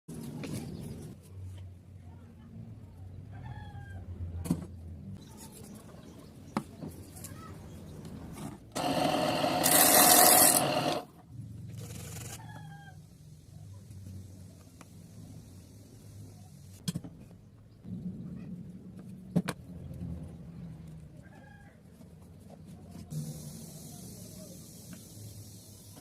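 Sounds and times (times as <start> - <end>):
saw cutting through wood: 8.8 - 11.1.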